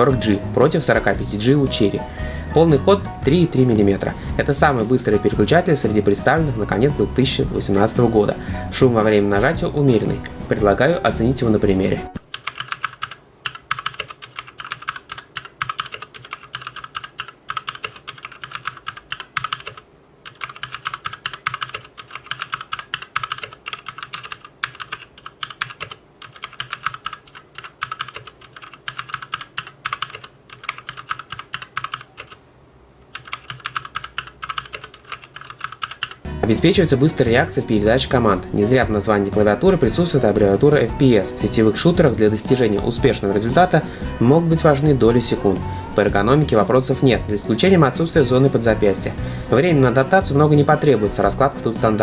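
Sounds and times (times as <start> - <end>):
fast typing on mechanical keyboard: 12.2 - 32.4, 33.1 - 36.2.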